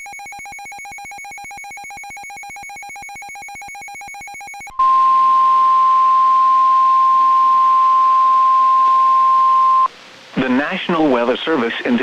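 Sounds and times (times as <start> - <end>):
rapid electronic beeping: 0.0 - 4.8
steady alarm tone: 0.0 - 9.9.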